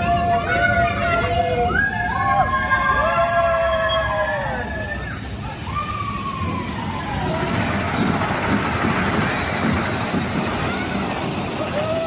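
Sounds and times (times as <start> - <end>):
roller coaster rumbling on track: 0.0 - 12.0.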